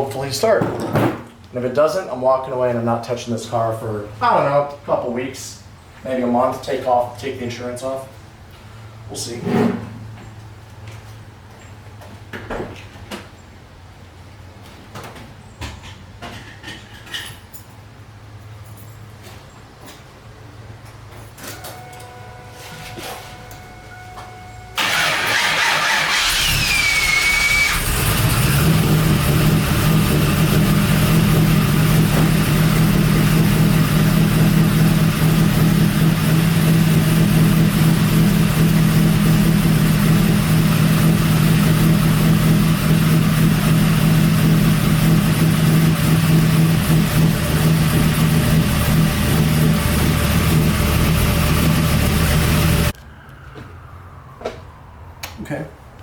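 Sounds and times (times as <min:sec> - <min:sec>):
car engine starting and idling: 0:21.6 - 0:53.0.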